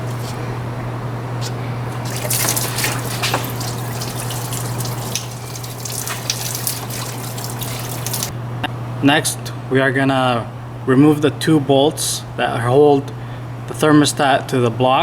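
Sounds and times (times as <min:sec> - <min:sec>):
coolant trickling and dripping: 0:01.4 - 0:08.4.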